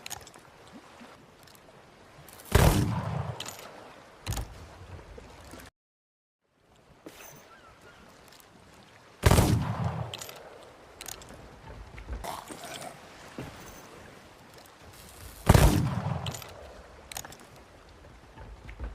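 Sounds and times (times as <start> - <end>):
faint clicks: 10.1 - 12.2.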